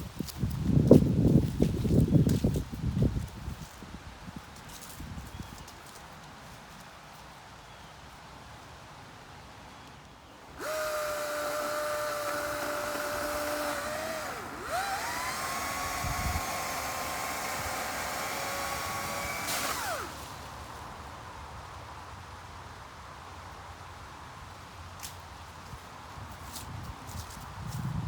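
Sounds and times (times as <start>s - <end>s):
electric chainsaw cutting limb: 10.4s - 21.0s.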